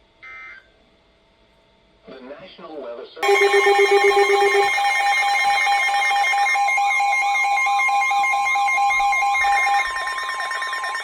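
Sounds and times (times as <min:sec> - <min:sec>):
rapid pulsed beeping: 0:03.2 - 0:11.0
steady high tone: 0:03.2 - 0:11.0.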